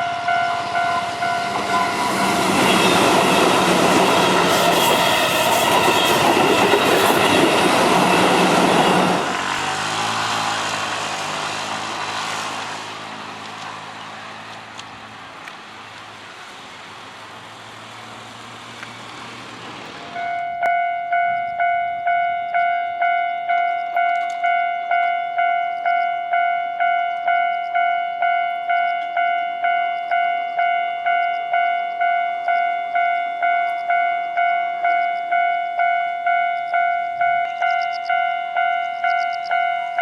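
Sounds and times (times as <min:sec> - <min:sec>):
level crossing bell clanging: 0:00.0 - 0:08.2, 0:20.1 - 0:40.0
road traffic passing: 0:00.0 - 0:40.0.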